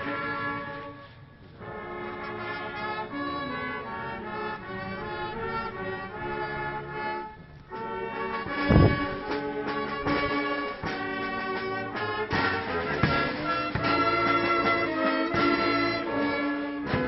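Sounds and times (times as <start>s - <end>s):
brass band playing: 0.0s - 17.0s
loud thump: 8.5s - 10.5s.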